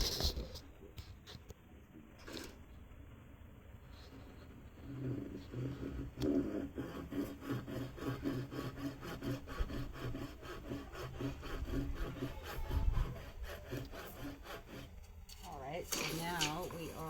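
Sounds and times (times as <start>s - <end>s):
handsaw cutting wood: 4.8s - 17.0s.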